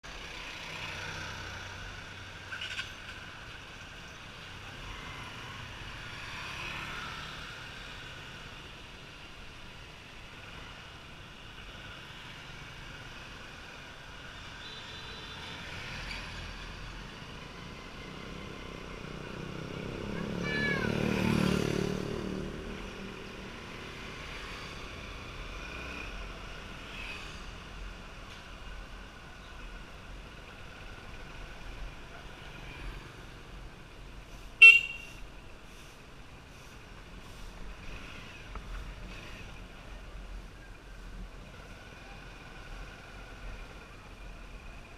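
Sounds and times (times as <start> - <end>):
traffic engines: 0.0 - 44.9
vehicle horn toot: 34.6 - 35.2.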